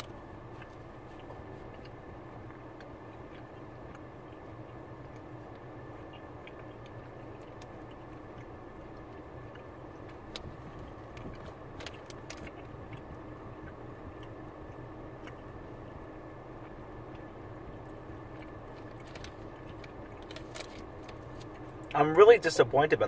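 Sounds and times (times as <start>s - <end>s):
soft sticky chewing: 0.0s - 22.5s
low room hum: 0.0s - 23.0s.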